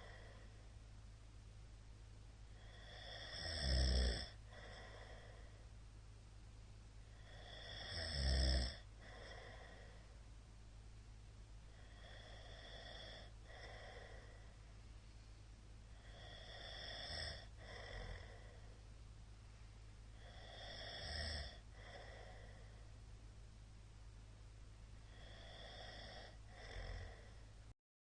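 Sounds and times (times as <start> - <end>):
man snoring softly: 0.0 - 0.6, 2.5 - 5.6, 7.0 - 10.2, 11.7 - 14.7, 15.9 - 18.8, 20.1 - 22.9, 25.0 - 27.6.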